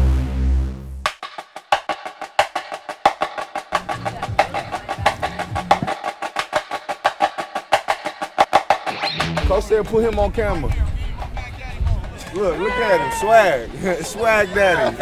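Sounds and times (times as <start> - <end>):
low bass line: 0.0 - 1.1, 3.8 - 5.9, 9.1 - 10.9
fast clicking percussion: 1.1 - 12.6.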